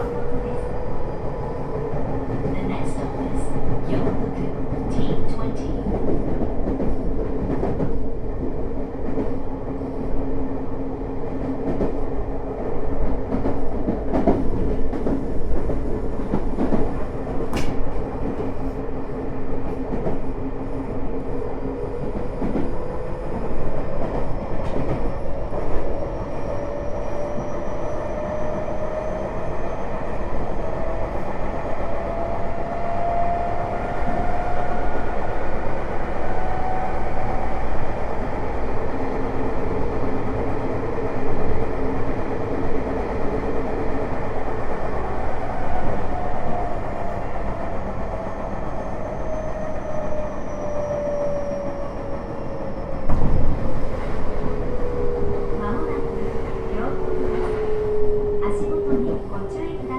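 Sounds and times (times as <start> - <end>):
train wheels on rails: 11.3 - 18.8.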